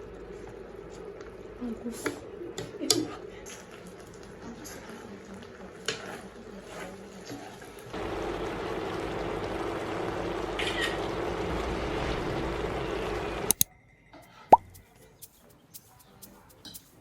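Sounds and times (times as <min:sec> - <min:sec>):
water rushing: 0:08.0 - 0:13.6.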